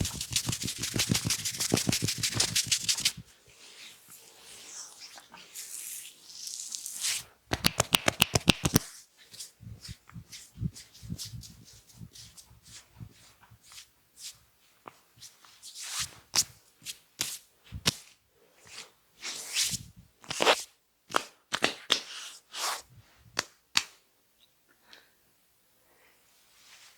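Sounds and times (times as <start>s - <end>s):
hands rubbing skin: 0.0s - 3.2s, 4.6s - 12.8s
hands slapping skin: 0.0s - 3.2s, 7.5s - 8.9s, 23.4s - 24.0s.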